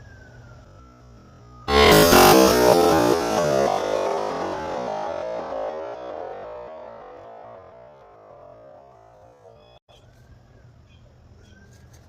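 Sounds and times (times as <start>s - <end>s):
synthesizer and keyboard music: 1.7s - 9.5s.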